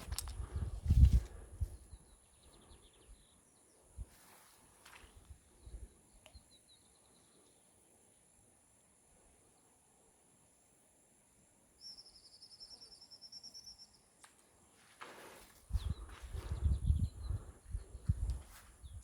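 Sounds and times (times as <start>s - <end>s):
faint high chirps: 11.8s - 14.2s.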